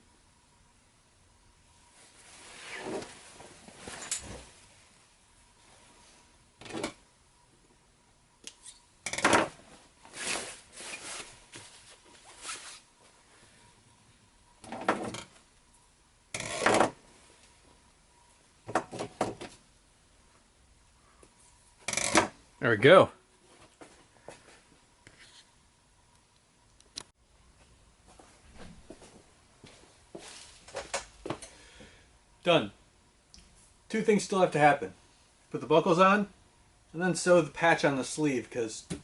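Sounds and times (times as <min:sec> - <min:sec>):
fabric rustling: 0:01.9 - 0:04.9.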